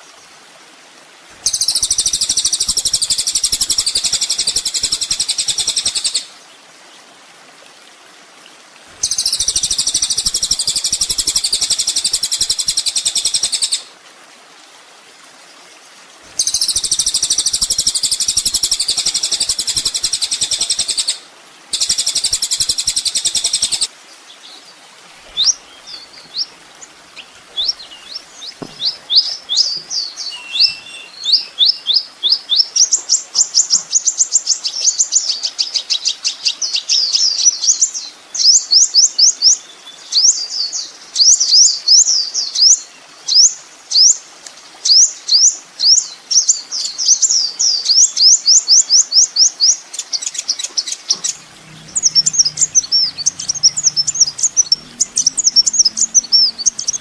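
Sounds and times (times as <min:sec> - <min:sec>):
bird chirping high-pitched song: 0:28.8 - 0:31.9, 0:51.1 - 0:57.0.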